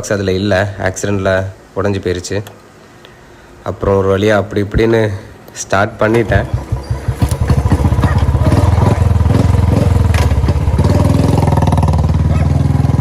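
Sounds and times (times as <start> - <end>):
motorcycle engine running: 6.1 - 13.0.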